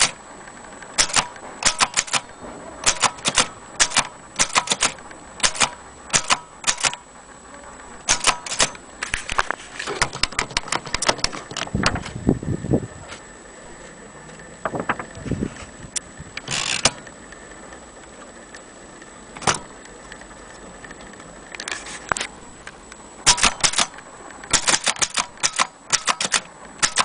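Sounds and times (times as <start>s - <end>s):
typewriter key strikes: 1.0s - 7.0s, 8.1s - 8.8s, 23.3s - 27.0s
typewriter rattle: 1.0s - 7.0s, 8.1s - 8.8s, 23.3s - 27.0s.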